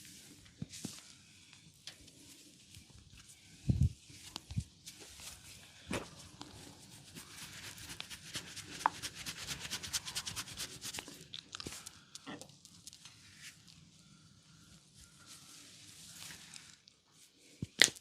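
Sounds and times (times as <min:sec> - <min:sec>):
hands scratching hair and scalp: 0:06.8 - 0:11.8.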